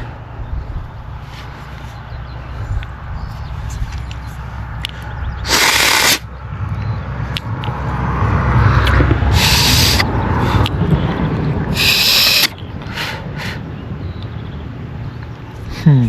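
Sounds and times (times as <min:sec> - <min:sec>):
hissing spray bursts: 0:05.5 - 0:06.2, 0:09.3 - 0:10.1, 0:11.7 - 0:12.5.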